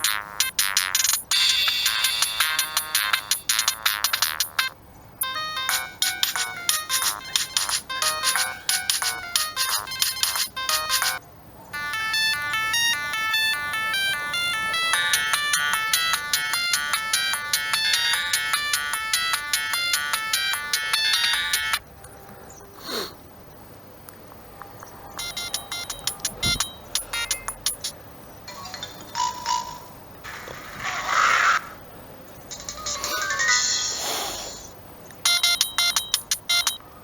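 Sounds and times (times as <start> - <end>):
polyphonic beeping ringtone melody: 0.0 - 11.2, 11.8 - 21.8, 25.2 - 28.0, 35.2 - 36.8
rhythmic clicking tone: 0.0 - 11.2, 11.8 - 21.8, 25.1 - 28.0, 35.2 - 36.9
rhythmic ringtone: 0.0 - 11.2, 11.8 - 21.8, 25.2 - 28.0, 35.2 - 36.8.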